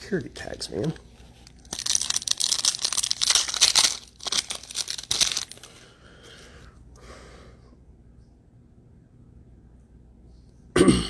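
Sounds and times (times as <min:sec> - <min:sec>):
packaging tearing and crinkling: 0:01.4 - 0:05.8.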